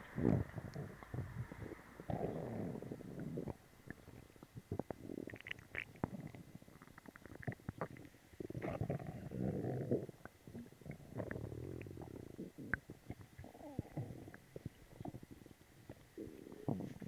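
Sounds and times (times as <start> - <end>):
stomach gurgling and rumbling: 0.0 - 17.0
small pops and bubbling: 3.2 - 8.9.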